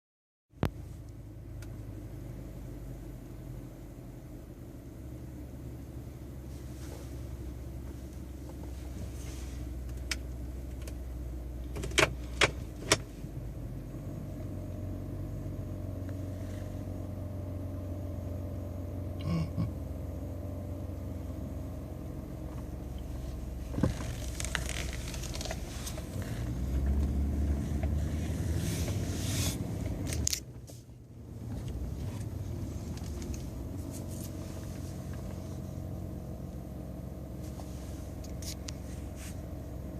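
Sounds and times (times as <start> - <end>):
low groan: 19.1 - 19.9.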